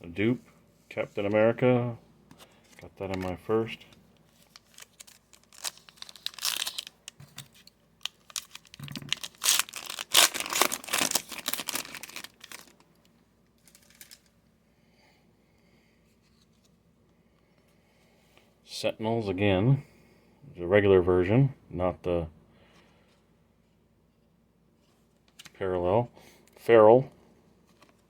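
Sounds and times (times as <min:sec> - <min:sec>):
card wrapper tearing and crinkling: 0:03.0 - 0:12.8, 0:13.6 - 0:14.3.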